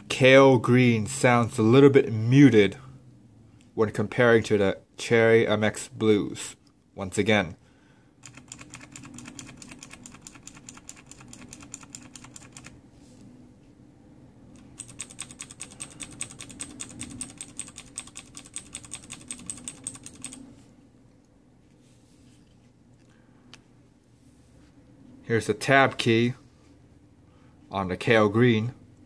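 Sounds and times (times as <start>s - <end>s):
mechanical keyboard typing: 8.2s - 12.8s, 14.6s - 20.5s.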